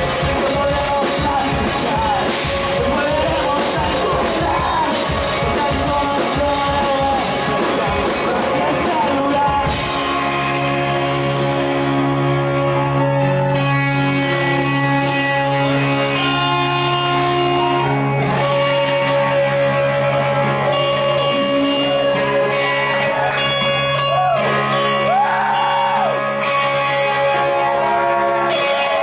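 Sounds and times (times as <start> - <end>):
electric guitars sustained notes: 0.0 - 29.0
live rock band playing: 0.0 - 29.0.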